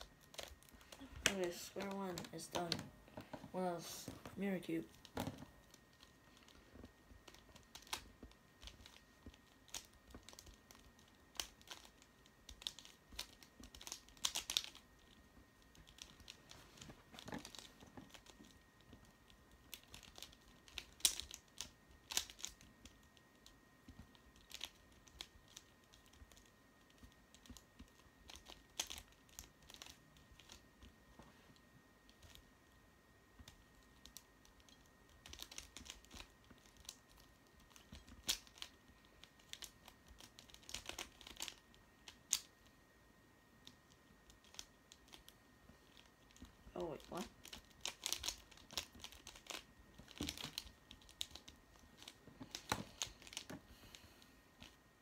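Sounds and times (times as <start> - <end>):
plastic puzzle cube clicking: 7.2 - 16.5, 17.2 - 30.6, 33.4 - 42.5, 43.6 - 54.8.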